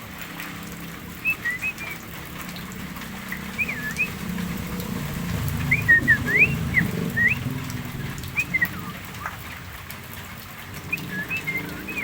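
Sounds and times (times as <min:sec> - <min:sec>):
myna whistling: 0:01.2 - 0:02.0, 0:03.6 - 0:04.2, 0:05.7 - 0:07.4, 0:08.3 - 0:09.4, 0:10.9 - 0:12.0.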